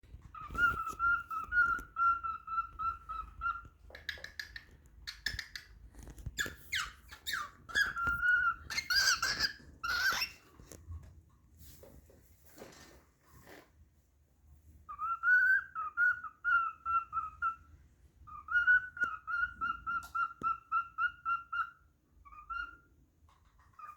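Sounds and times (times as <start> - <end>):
cockatiel whistling: 0.3 - 5.7, 6.4 - 10.4, 14.9 - 17.7, 18.3 - 22.9.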